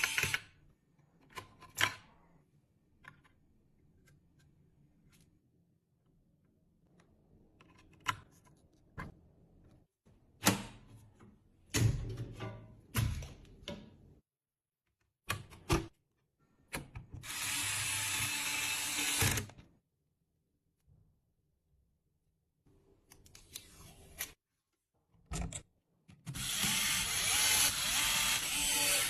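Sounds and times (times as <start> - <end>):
computer parts clicking and knocking: 25.2 - 26.4.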